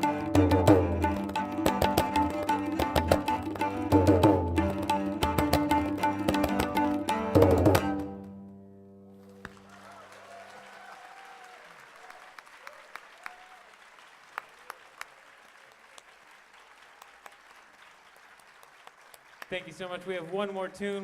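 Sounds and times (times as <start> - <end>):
tabla: 0.0 - 8.4
cello notes ringing: 0.0 - 9.2
audience applause: 9.3 - 21.0
faint cheering voices: 9.6 - 13.8.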